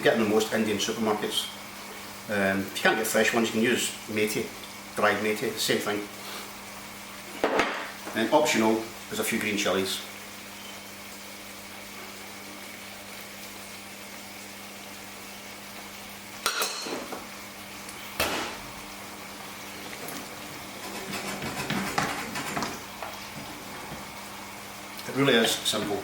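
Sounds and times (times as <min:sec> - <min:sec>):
curry simmering in a pan: 0:10.0 - 0:25.1
utensil knocking against pan: 0:20.8 - 0:22.7.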